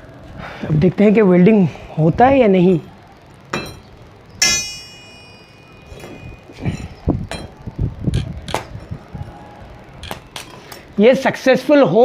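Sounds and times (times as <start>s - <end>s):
welding arc crackling: 2.0s - 11.7s
metal rod clinking on metal: 3.5s - 7.6s.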